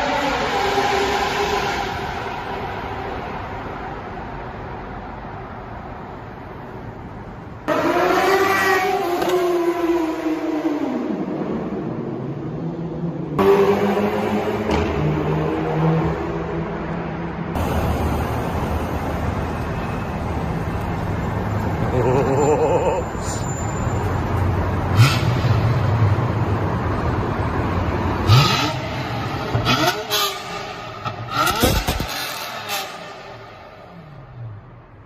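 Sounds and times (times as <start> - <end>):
car engine revving while driving: 28.2 - 33.1.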